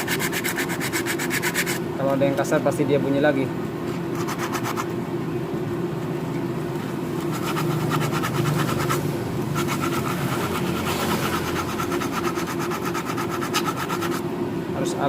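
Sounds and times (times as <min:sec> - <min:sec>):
abrasive rasping: 0:07.2 - 0:14.2
armature spinning whirr: 0:07.2 - 0:14.2.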